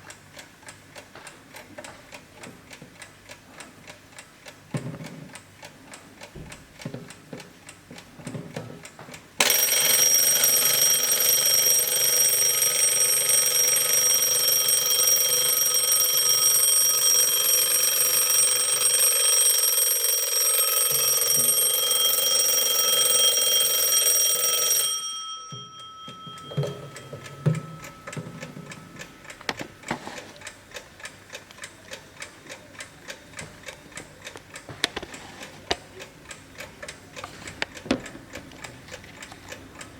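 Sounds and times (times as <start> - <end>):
alarm clock bell ringing: 9.4 - 29.3
clock ticking: 25.8 - 39.9.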